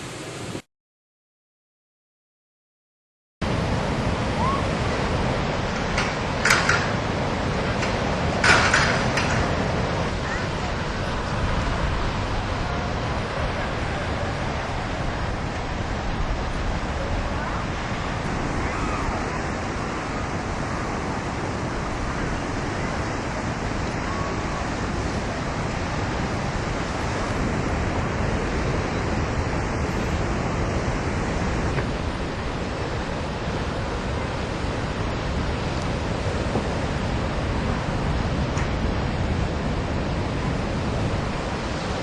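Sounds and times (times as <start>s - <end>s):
wind: 0.0s - 0.7s, 3.4s - 42.0s
surf: 3.4s - 42.0s
wind rumbling on microphone: 3.4s - 42.0s.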